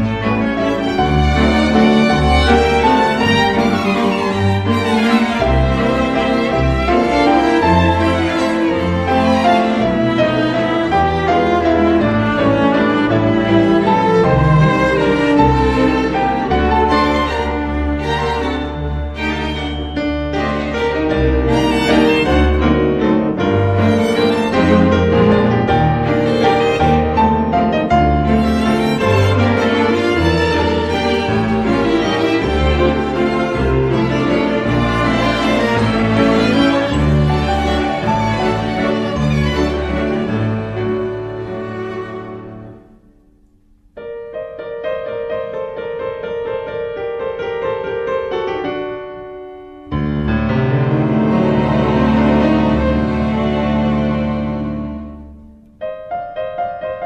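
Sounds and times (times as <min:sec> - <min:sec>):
violin and cello: 0:00.0 - 0:42.9, 0:49.9 - 0:55.6
background music: 0:00.0 - 0:43.9
piano: 0:00.0 - 0:57.0.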